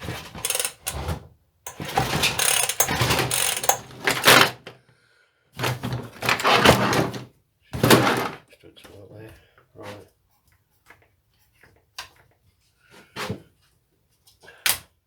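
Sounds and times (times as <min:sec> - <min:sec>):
plastic and metal parts clattering: 0:00.0 - 0:04.8, 0:05.6 - 0:08.4.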